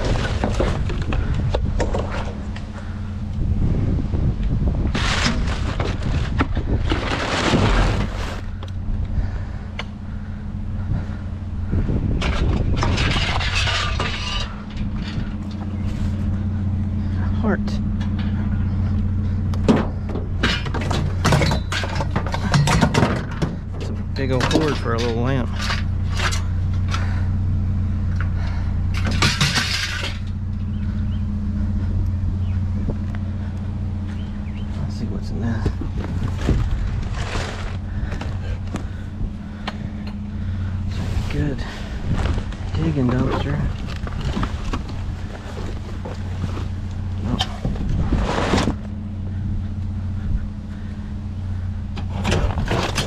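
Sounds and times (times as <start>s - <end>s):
clatter of junk being handled: 0.0s - 2.7s, 4.8s - 8.8s, 12.2s - 16.4s, 19.6s - 27.2s, 28.2s - 30.7s, 35.4s - 40.2s, 40.9s - 49.0s, 52.0s - 53.0s
vehicle engine idling: 0.0s - 53.0s.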